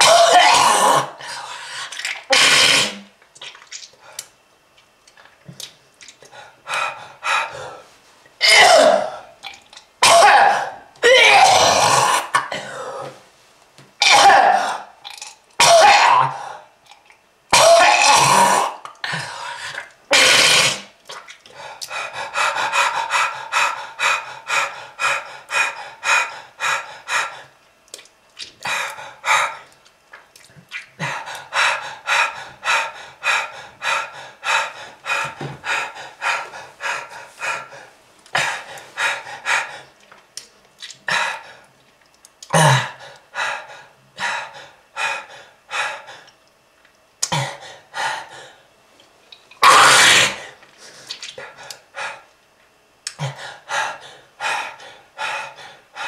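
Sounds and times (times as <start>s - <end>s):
person coughing harshly: 0.0s - 1.2s, 8.4s - 9.2s, 10.0s - 13.1s, 14.0s - 14.9s, 15.6s - 16.4s, 17.6s - 18.8s.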